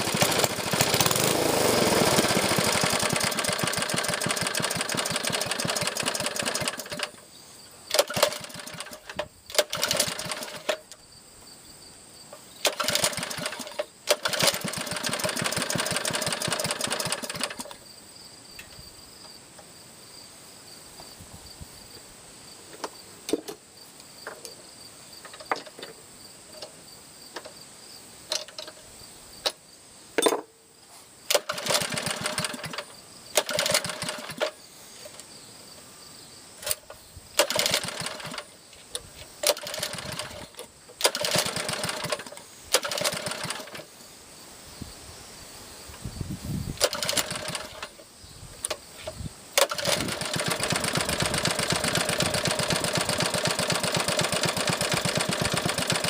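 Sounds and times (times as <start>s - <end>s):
small engine running in spurts: 0.0s - 7.2s, 7.9s - 10.8s, 12.6s - 17.7s, 31.3s - 34.6s, 36.6s - 38.5s, 39.4s - 43.9s, 46.8s - 48.0s, 49.6s - 56.0s.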